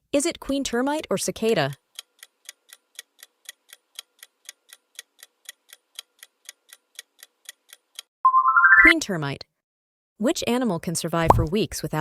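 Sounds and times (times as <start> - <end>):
clock ticking: 1.0 - 8.1.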